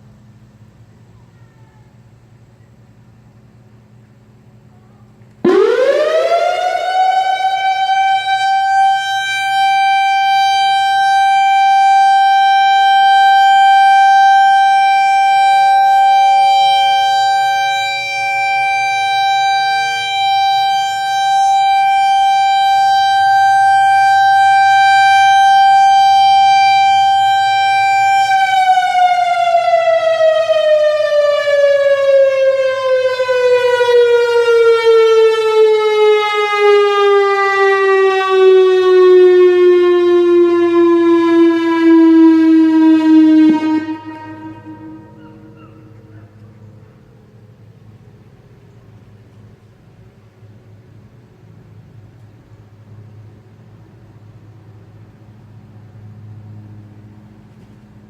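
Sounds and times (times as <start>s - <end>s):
electronic warning siren: 5.4s - 46.4s.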